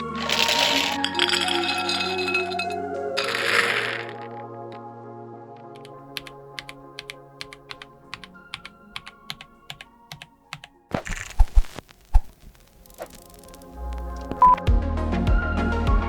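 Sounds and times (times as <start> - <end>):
soft background music: 0.0 - 11.8, 12.6 - 16.0
mechanical keyboard typing: 5.6 - 11.7.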